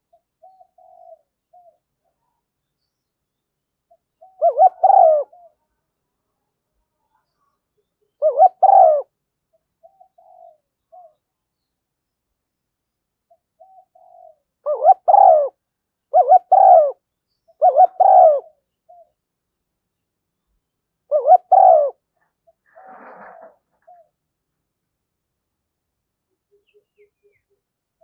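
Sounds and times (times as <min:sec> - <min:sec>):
dove cooing: 0:00.1 - 0:01.8, 0:04.2 - 0:05.6, 0:08.2 - 0:09.1, 0:09.8 - 0:11.2, 0:13.6 - 0:17.0, 0:17.6 - 0:19.1, 0:21.1 - 0:24.2.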